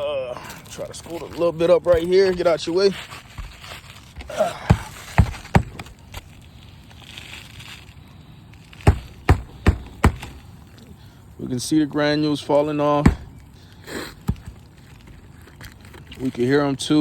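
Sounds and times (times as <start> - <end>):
gritty rustling of granules: 0.0 - 17.0
knocks on shingle roof: 4.2 - 5.9, 8.8 - 10.4, 13.0 - 13.4.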